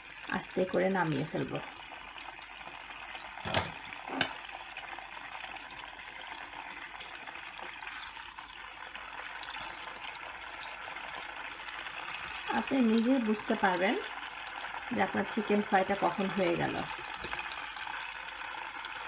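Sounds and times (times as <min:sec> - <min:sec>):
chicken sizzling in oil: 0:00.0 - 0:19.0
utensil knocking on pan: 0:03.4 - 0:04.4.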